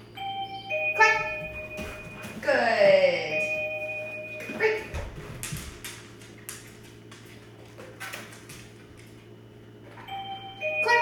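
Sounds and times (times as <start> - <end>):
low steady hum: 0.0 - 11.0
wireless doorbell chime: 0.1 - 2.3, 3.0 - 5.0, 10.0 - 11.0.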